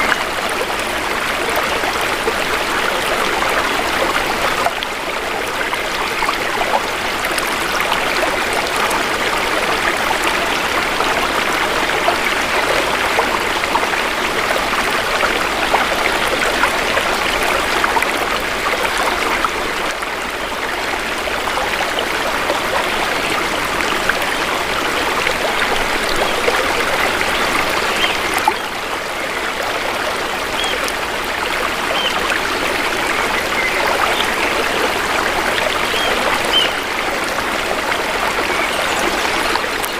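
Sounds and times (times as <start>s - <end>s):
shallow river water flowing: 0.0s - 39.9s.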